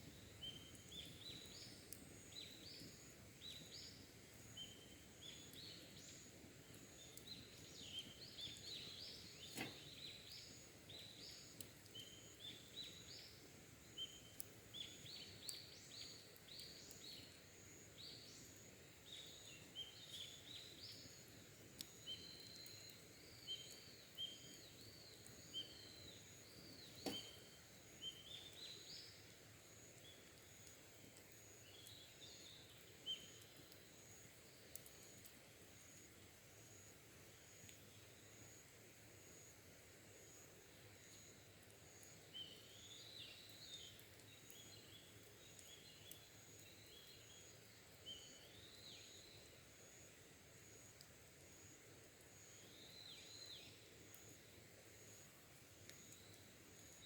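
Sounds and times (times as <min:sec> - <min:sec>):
wild birds chirping: 0:22.0 - 0:34.2.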